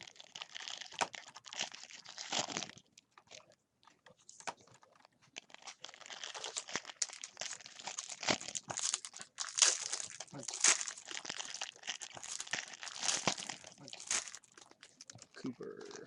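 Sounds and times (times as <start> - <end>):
card pack wrappers crinkling: 0.0 - 16.0
cards rustling and clicking: 3.2 - 11.1.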